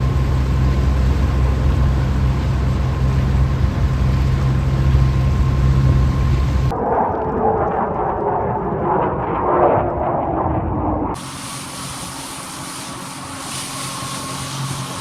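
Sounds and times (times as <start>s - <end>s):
boat motor droning: 0.0s - 6.7s, 11.2s - 15.0s
faint steady whine: 11.2s - 15.0s.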